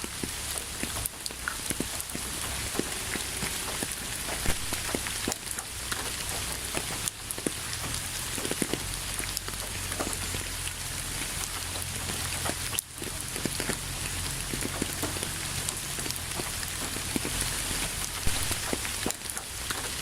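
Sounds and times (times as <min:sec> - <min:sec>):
raindrops tapping close by: 0:00.0 - 0:20.0
steady rain falling: 0:00.0 - 0:20.0.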